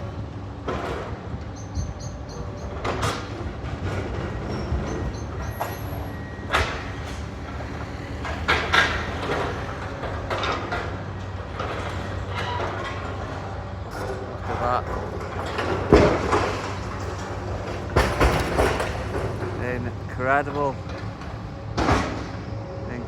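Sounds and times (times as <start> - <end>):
demolition machinery engine drone: 0.0 - 23.0
rubble crashing: 6.4 - 22.5.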